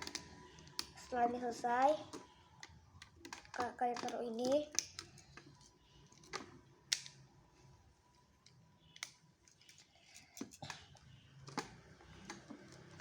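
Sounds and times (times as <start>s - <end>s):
plastic bricks clicking together: 2.1s - 7.2s.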